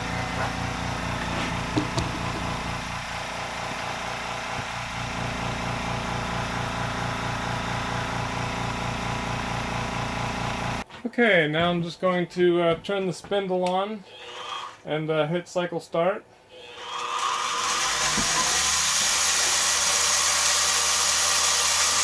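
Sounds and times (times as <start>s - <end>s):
air compressor running: 0.0s - 10.8s, 16.6s - 22.0s.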